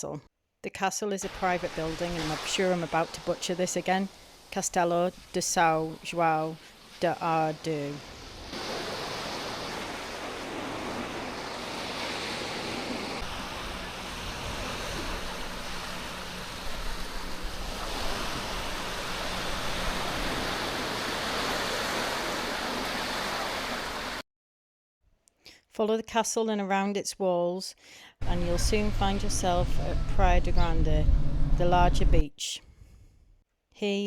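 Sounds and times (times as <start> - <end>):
surf washing onto beach: 1.3 - 24.2
low rumble: 28.2 - 32.2.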